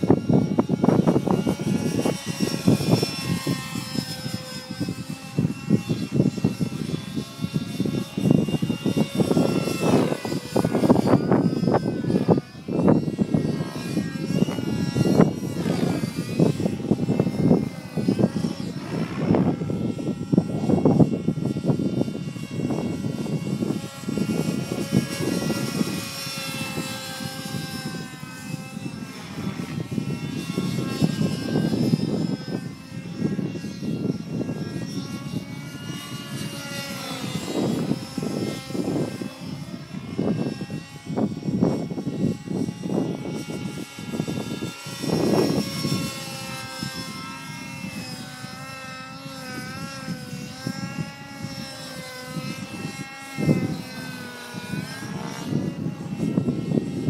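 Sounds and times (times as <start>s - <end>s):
model helicopter engine whine: 0.0s - 57.0s
choppy low rushing: 8.2s - 28.1s.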